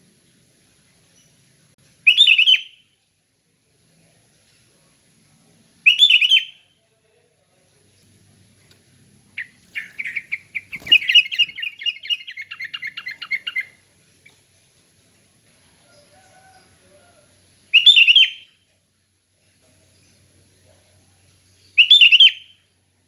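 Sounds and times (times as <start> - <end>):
bird singing bubbling notes: 9.4 - 13.8.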